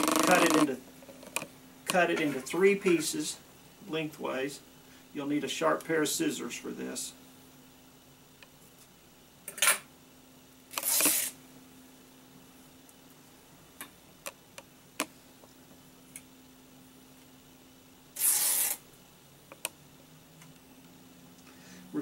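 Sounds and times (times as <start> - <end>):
faint steady hum: 0.0 - 22.0
scissors cutting tape: 10.7 - 11.3, 18.2 - 18.8.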